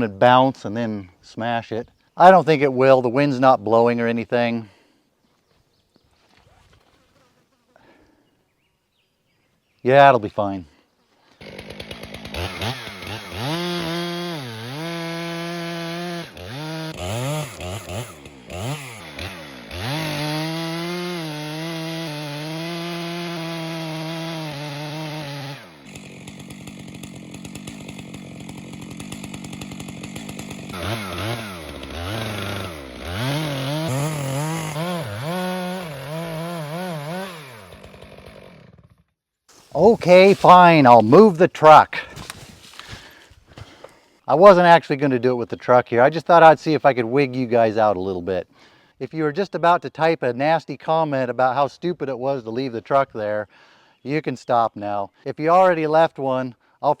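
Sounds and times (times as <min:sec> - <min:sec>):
chainsaw revving: 0:11.3 - 0:44.0.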